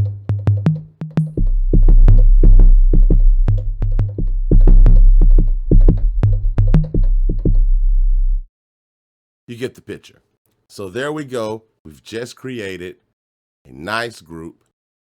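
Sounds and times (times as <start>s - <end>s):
deep sustained bass: 1.4s - 8.5s.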